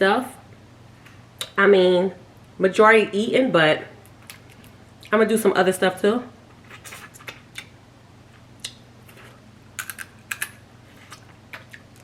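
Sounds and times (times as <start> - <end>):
eating clicks and crackles: 8.6 - 12.0.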